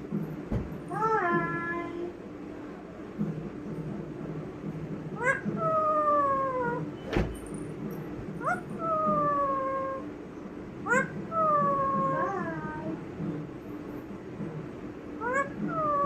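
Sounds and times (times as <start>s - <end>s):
parrot squawking and whistling: 5.2s - 6.8s, 10.9s - 12.6s.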